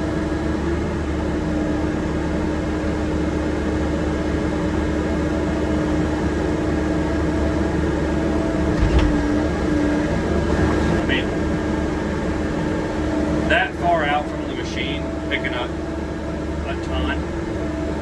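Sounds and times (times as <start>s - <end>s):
excavator engine humming: 0.0s - 18.0s
low thump: 8.7s - 9.7s.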